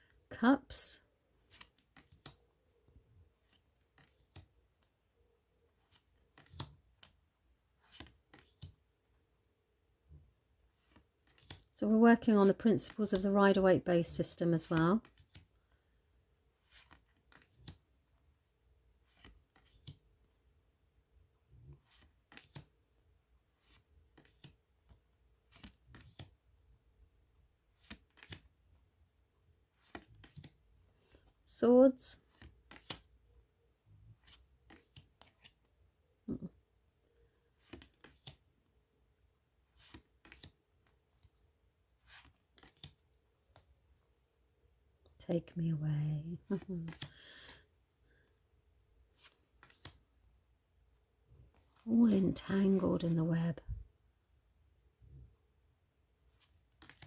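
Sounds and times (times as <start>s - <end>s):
cards sliding and tapping: 5.8s - 7.2s, 7.8s - 8.8s, 19.1s - 20.0s, 21.7s - 22.7s, 29.8s - 31.3s, 32.3s - 33.1s, 37.5s - 38.5s, 39.7s - 41.3s, 42.0s - 43.7s, 49.1s - 50.0s, 56.4s - 57.0s.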